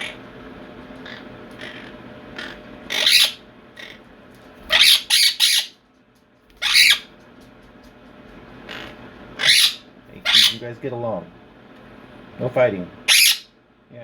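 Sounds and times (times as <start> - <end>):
parrots squawking: 0.0 - 0.3, 1.0 - 5.8, 6.5 - 7.1, 8.6 - 10.6, 13.0 - 13.5.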